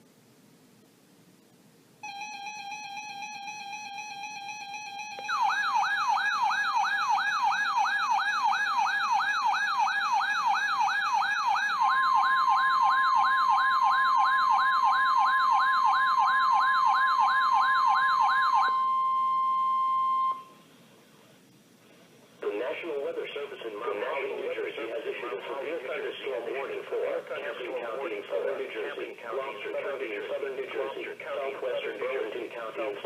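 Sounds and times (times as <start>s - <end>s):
steady alarm tone: 2.0s - 20.6s.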